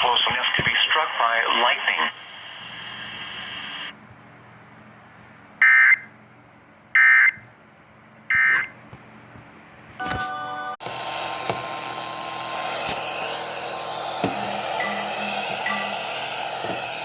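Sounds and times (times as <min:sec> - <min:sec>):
buzzy tone: 0:11.0 - 0:17.0
shrill electronic data bursts: 0:14.4 - 0:16.2.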